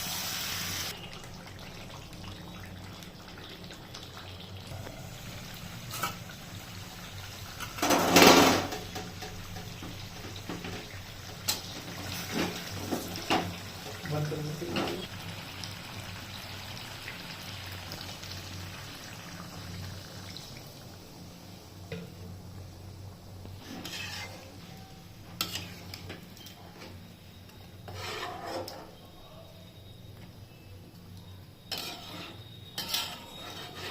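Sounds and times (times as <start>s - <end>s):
water running and pouring: 0.0s - 7.2s
utensil scraping a cooking pot: 23.6s - 24.8s, 25.4s - 26.1s, 27.6s - 29.2s, 31.6s - 33.9s.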